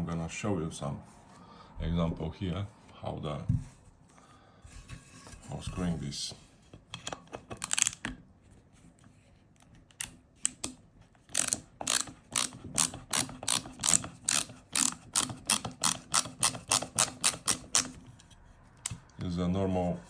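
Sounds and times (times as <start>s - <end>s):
ratcheting screwdriver clicking: 7.0s - 8.1s, 9.9s - 18.0s.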